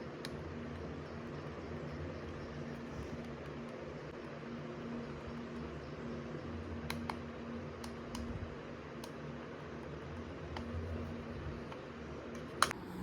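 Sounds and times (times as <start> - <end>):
steady low hum: 0.0 - 13.0
muted mouse clicks: 6.9 - 8.4.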